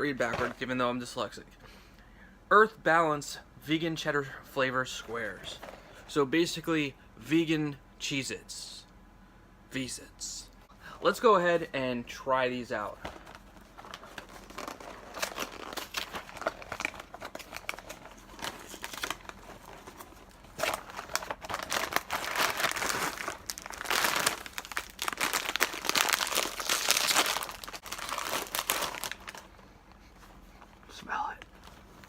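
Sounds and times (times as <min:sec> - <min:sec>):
snack packaging crinkling and tearing: 0:13.0 - 0:29.6.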